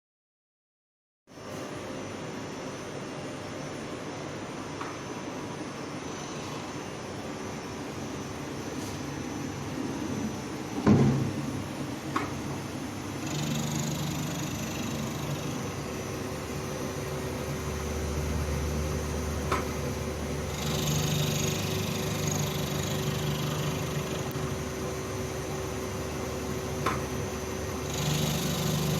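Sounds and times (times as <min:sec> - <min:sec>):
lathe machine hum: 0:11.7 - 0:28.9
hissing grinding cutting noise: 0:13.2 - 0:15.9, 0:20.4 - 0:24.5, 0:27.8 - 0:28.9.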